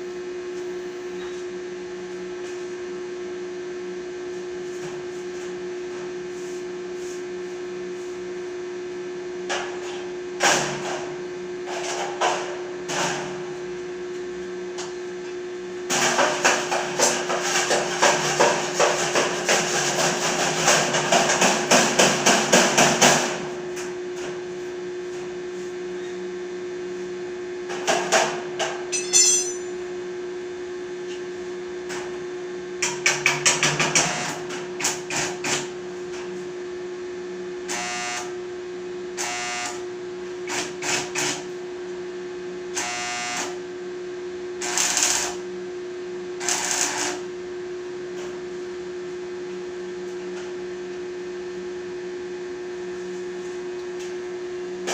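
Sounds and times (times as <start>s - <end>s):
electrical hum: 0.0s - 20.1s, 34.0s - 54.9s
hammer striking metal: 28.9s - 29.7s.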